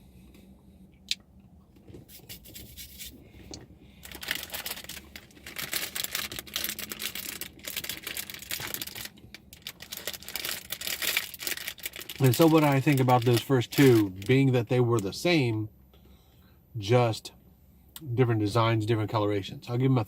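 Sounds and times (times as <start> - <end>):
candy packaging crinkling: 4.0 - 14.4.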